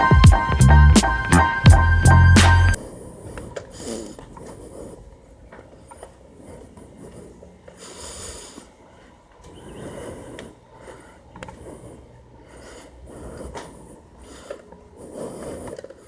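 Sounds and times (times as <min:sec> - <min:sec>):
breathing close to microphone: 0:06.4 - 0:09.2, 0:09.8 - 0:16.0.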